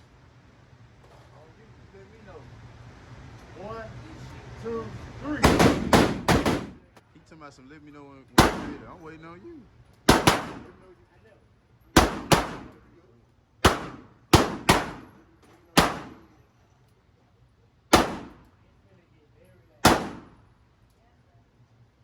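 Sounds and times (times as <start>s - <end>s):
gunshots with echo: 5.4s - 6.8s, 8.4s - 9.0s, 10.1s - 10.8s, 12.0s - 12.8s, 13.6s - 15.2s, 15.8s - 16.3s, 17.9s - 18.4s, 19.8s - 20.4s.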